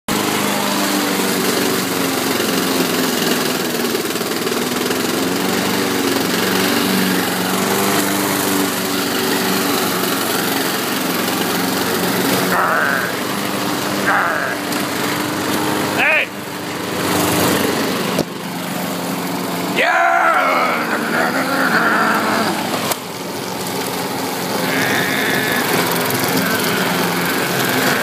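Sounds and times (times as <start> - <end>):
lawn mower engine running: 0.1 - 28.0
person shouting: 12.4 - 13.2, 14.0 - 14.7, 16.0 - 16.4, 19.7 - 22.7, 24.6 - 28.0.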